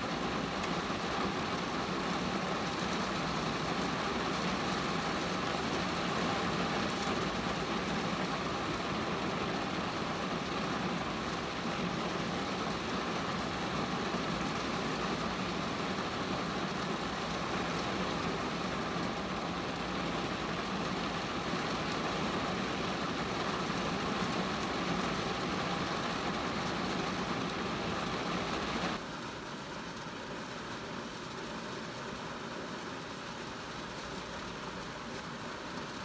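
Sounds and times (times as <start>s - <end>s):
rain falling on a car: 0.0s - 36.0s.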